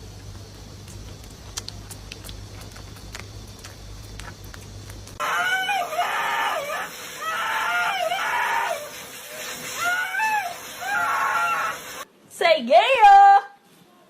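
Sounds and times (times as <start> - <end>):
animal screaming: 5.2 - 9.0, 9.6 - 12.0.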